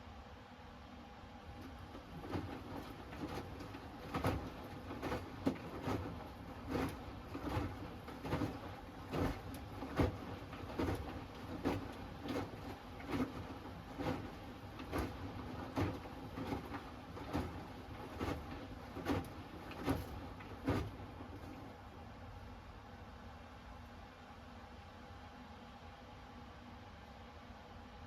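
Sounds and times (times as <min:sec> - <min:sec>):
low washing machine hum: 0:00.0 - 0:28.0
wet laundry thumping in drum: 0:01.9 - 0:21.7.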